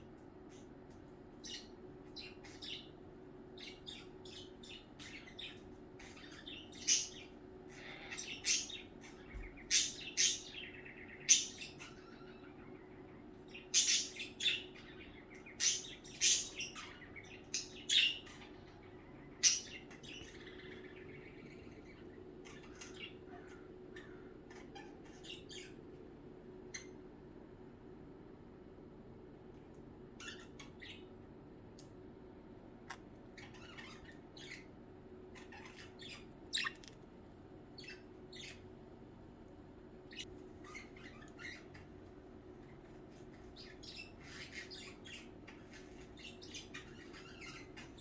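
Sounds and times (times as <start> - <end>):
budgerigars chirping: 3.6 - 25.8, 30.2 - 31.1, 33.4 - 34.7, 35.4 - 37.0, 37.8 - 38.6, 40.0 - 41.9, 42.6 - 48.0.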